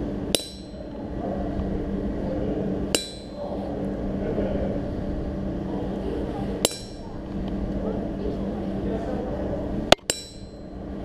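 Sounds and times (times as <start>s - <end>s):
low background hum: 0.0s - 11.0s
hammer ringing on anvil: 0.3s - 1.0s, 2.9s - 3.4s, 6.6s - 7.1s, 10.0s - 10.8s.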